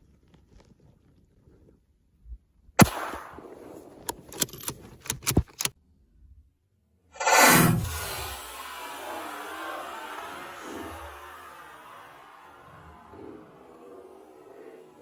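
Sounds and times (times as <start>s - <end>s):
gunshot: 2.8s - 3.8s
sharp clicks and knocks: 4.0s - 5.8s
loud swell of noise: 7.2s - 15.0s.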